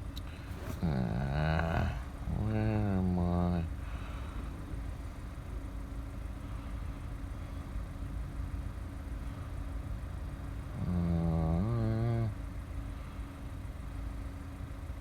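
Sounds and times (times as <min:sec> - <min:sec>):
car engine idling: 0:00.0 - 0:10.8
man humming: 0:00.5 - 0:04.0, 0:10.8 - 0:12.4.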